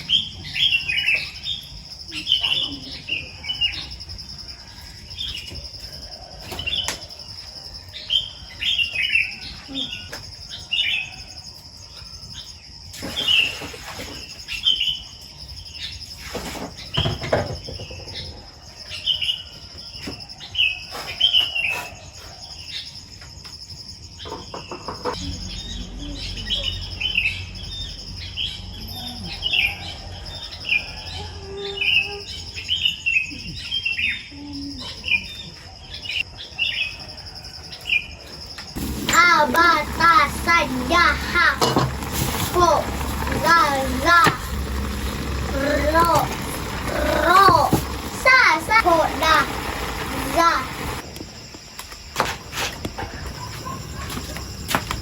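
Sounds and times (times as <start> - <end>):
small birds chirping: 0.0 - 55.0
high insect-like whine: 36.0 - 55.0.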